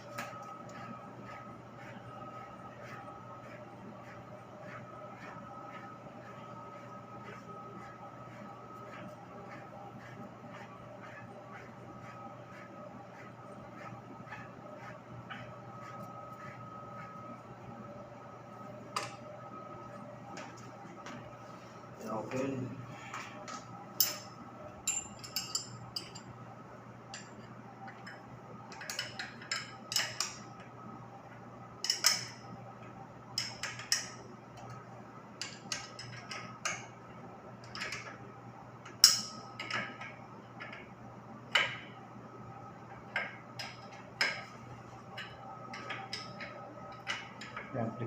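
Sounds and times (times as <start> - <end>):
steady low hum: 0.0 - 48.0.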